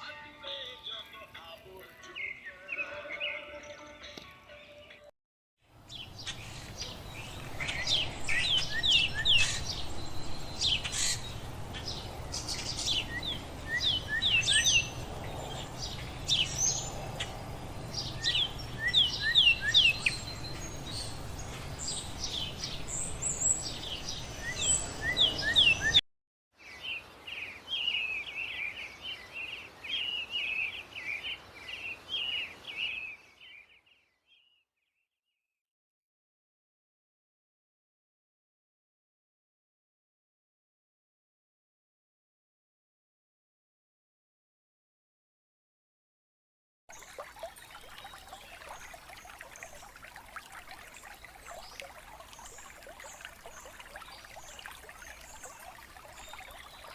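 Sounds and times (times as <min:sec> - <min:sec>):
fast continuous bird twittering: 0:05.9 - 0:26.0, 0:46.9 - 0:56.9.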